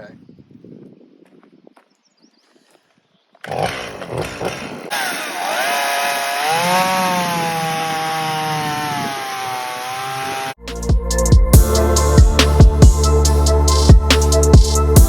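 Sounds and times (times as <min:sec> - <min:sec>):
chainsaw engine running: 0:03.4 - 0:10.6.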